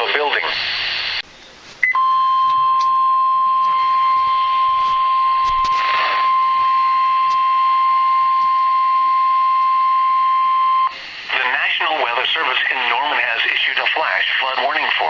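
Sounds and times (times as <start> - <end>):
weather radio alarm tone: 1.9 - 13.0.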